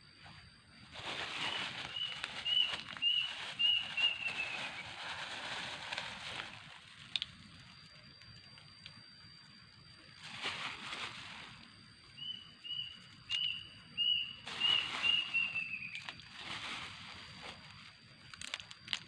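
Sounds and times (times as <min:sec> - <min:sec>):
rustling noise: 0:00.9 - 0:06.9, 0:10.2 - 0:11.7, 0:14.4 - 0:17.9
bird chirping: 0:01.4 - 0:04.9, 0:12.0 - 0:16.0.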